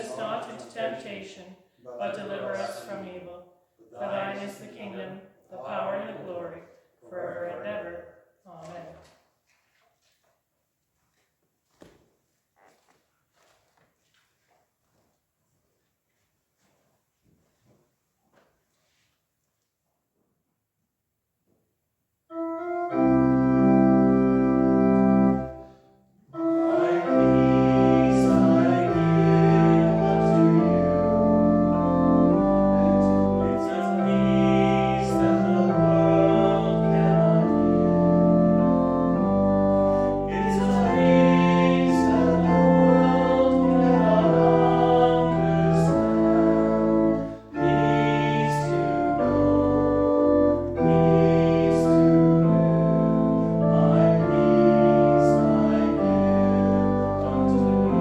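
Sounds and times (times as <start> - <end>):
organ playing sustained chords: 22.3 - 58.0.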